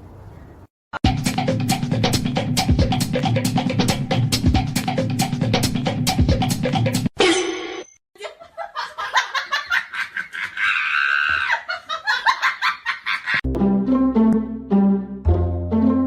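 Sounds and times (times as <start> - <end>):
drum beat: 1.0 - 7.1
people laughing: 8.2 - 13.4
plucked string music: 13.4 - 16.0.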